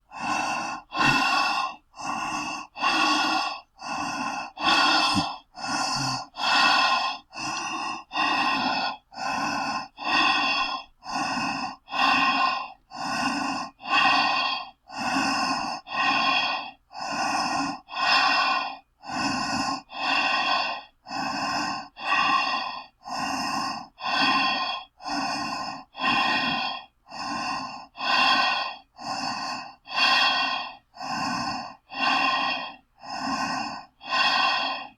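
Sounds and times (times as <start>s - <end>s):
breathing through gas mask: 0.0s - 34.9s.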